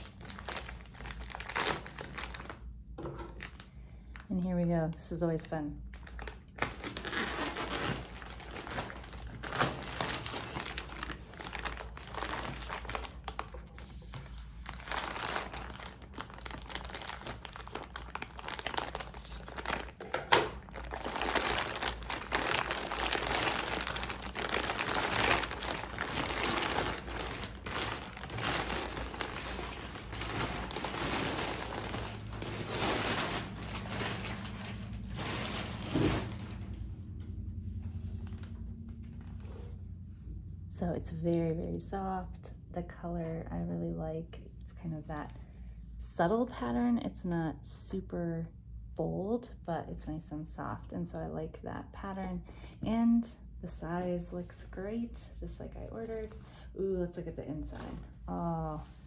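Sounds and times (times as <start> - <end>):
packaging crinkling and rustling: 0.0 - 4.3, 5.9 - 36.9, 38.1 - 39.8.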